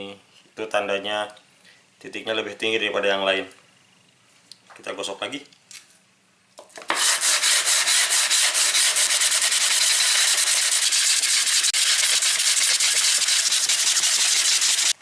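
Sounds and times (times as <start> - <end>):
plane rasping on sandpaper: 6.9 - 15.0.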